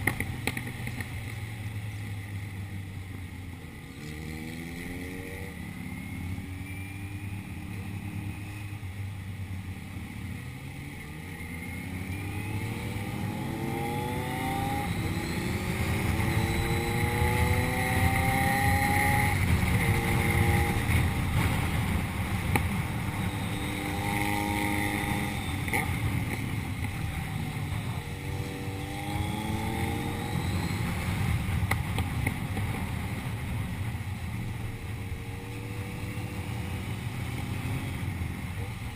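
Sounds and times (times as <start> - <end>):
vehicle engine accelerating: 0.0 - 38.9
steady low rumble: 30.4 - 38.9.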